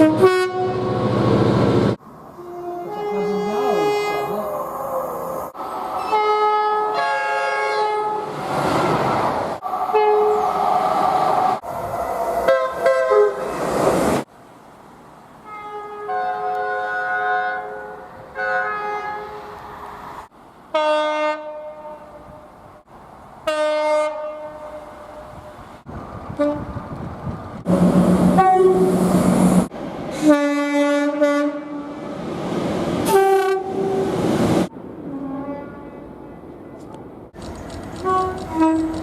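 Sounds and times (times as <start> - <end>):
train horn blasts: 0.0 - 1.1, 2.4 - 4.4, 6.0 - 8.3, 9.9 - 10.5, 12.4 - 13.4, 15.4 - 19.5, 20.7 - 22.4, 23.4 - 25.5, 26.4 - 26.7, 28.4 - 29.0, 30.2 - 32.0, 33.1 - 34.1, 35.1 - 36.1, 38.0 - 39.0
train wheels on track: 25.5 - 30.5, 36.4 - 39.0.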